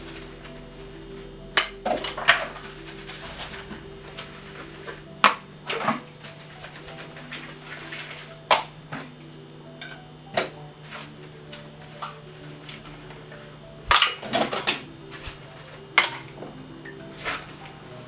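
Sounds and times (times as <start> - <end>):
metal pots and pans clanking: 1.5 - 6.5, 13.8 - 17.7.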